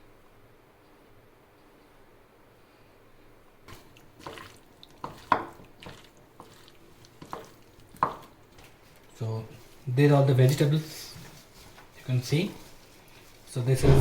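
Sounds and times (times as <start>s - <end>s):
wet squishes of food in bowl: 3.7s - 13.6s.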